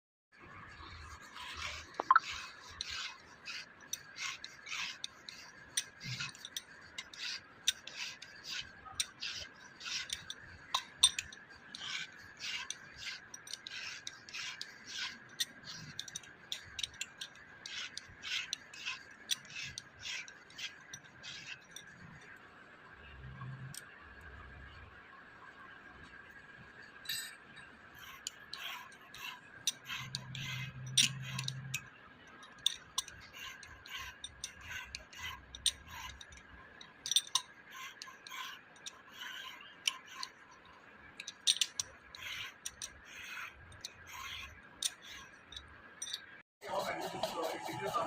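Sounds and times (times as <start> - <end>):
hand scraping on metal: 1.1 - 21.7.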